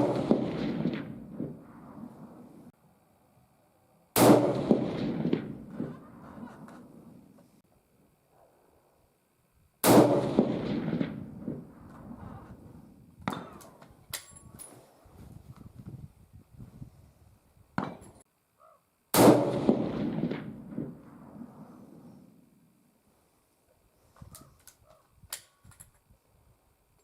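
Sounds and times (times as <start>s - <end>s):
rifle shots with echo: 0.0s - 2.5s, 4.2s - 7.1s, 9.8s - 11.8s, 19.2s - 21.8s.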